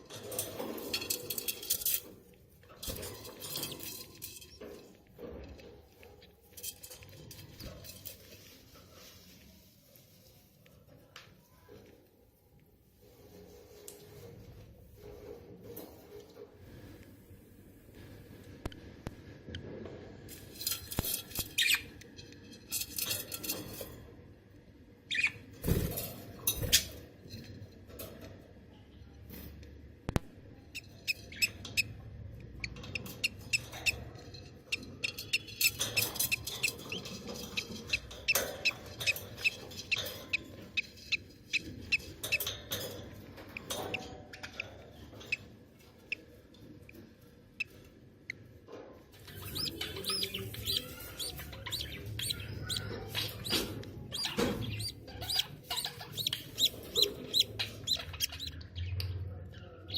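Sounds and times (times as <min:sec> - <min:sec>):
budgies chirping: 0:34.7 - 0:42.4, 0:49.2 - 0:59.9.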